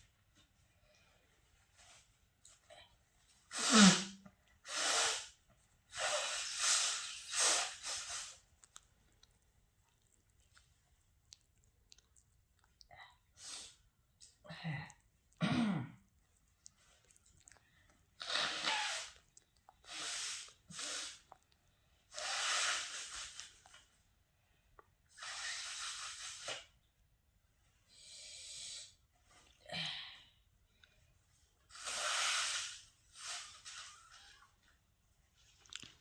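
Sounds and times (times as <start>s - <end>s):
person sneezing: 3.5s - 5.3s, 18.2s - 19.2s
person blowing nose: 3.5s - 8.4s, 18.2s - 21.3s, 22.1s - 23.6s, 25.1s - 26.7s, 31.7s - 34.4s.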